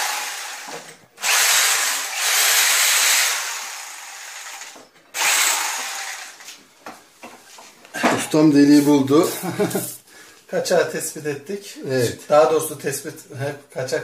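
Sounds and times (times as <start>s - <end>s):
electric drill boring into tile: 0.0s - 6.5s.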